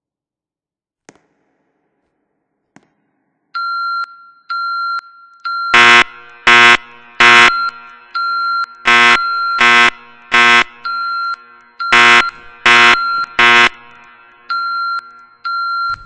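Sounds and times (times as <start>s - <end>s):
pulsing electronic alarm tone: 5.6s - 16.0s
loud alarm horn blasts: 5.7s - 16.0s.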